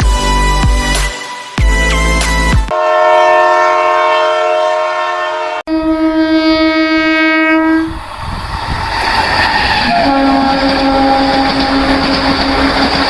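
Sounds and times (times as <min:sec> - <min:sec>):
train horn blast: 0:02.7 - 0:08.0, 0:09.8 - 0:12.8
train rumbling on rails: 0:07.6 - 0:13.0.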